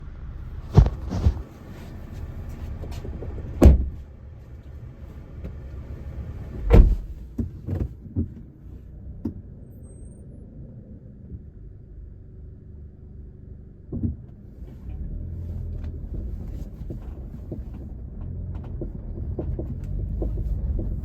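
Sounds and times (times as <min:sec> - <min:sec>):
steady low rumble: 0:00.0 - 0:09.6, 0:10.2 - 0:21.0
dull knocking thumps: 0:00.7 - 0:01.5.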